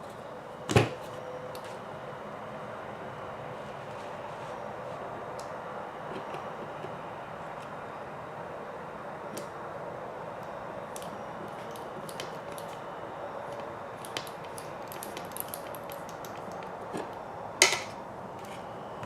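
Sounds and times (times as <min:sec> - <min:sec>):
steady background hum: 0:00.0 - 0:19.0
small parts clicking and tapping: 0:10.9 - 0:12.8, 0:13.5 - 0:18.0.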